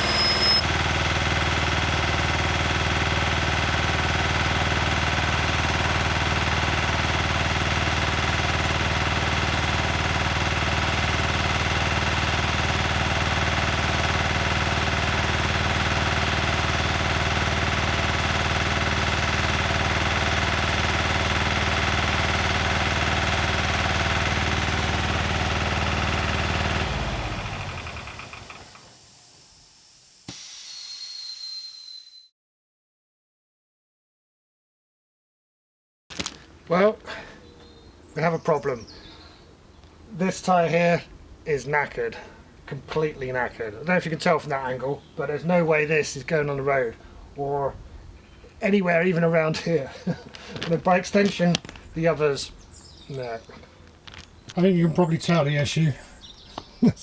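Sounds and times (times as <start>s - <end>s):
machine motor humming and rattling: 0.0s - 30.4s.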